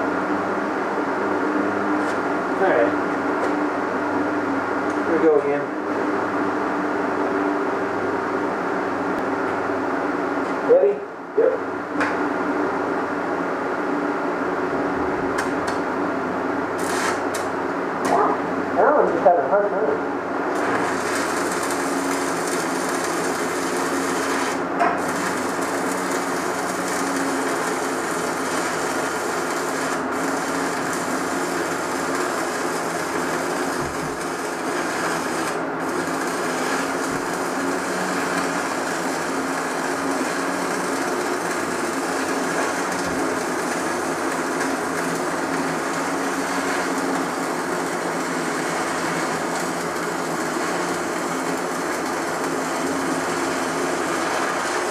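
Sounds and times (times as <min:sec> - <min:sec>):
stick welding arc: 0:16.7 - 0:17.6, 0:20.5 - 0:54.9.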